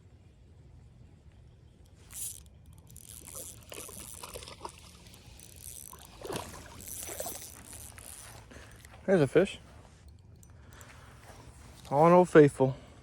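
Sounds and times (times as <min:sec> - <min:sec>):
water splashing: 0:02.9 - 0:08.7.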